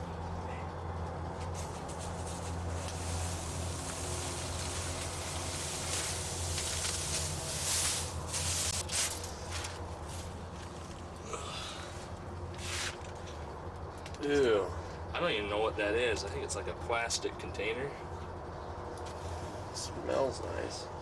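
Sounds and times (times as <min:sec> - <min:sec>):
steady low hum: 0:00.0 - 0:21.0
garbage rustling and scraping: 0:01.4 - 0:13.4.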